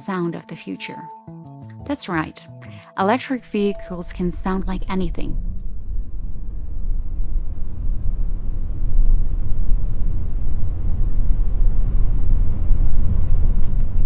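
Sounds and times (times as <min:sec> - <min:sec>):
car engine low rumble: 0:04.0 - 0:14.0.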